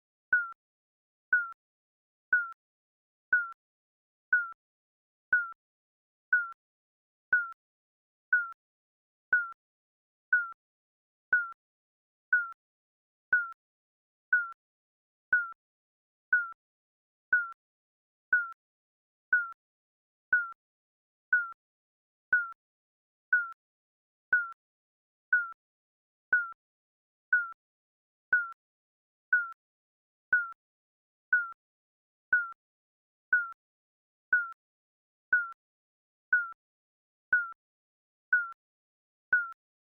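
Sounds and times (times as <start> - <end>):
timer beeping: 0.3 - 0.6, 1.3 - 1.6, 2.4 - 2.6, 3.3 - 3.6, 4.3 - 4.6, 5.3 - 5.6, 6.3 - 6.6, 7.3 - 7.6, 8.3 - 8.6, 9.3 - 9.6, 10.3 - 10.6, 11.3 - 11.6, 12.3 - 12.6, 13.3 - 13.6, 14.3 - 14.6, 15.3 - 15.6, 16.3 - 16.6, 17.3 - 17.6, 18.3 - 18.6, 19.3 - 19.6, 20.3 - 20.6, 21.3 - 21.6, 22.3 - 22.6, 23.3 - 23.6, 24.3 - 24.6, 25.3 - 25.6, 26.3 - 26.6, 27.3 - 27.6, 28.3 - 28.6, 29.3 - 29.6, 30.3 - 30.6, 31.3 - 31.6, 32.3 - 32.6, 33.3 - 33.6, 34.3 - 34.6, 35.3 - 35.6, 36.3 - 36.6, 37.3 - 37.6, 38.3 - 38.6, 39.3 - 39.6.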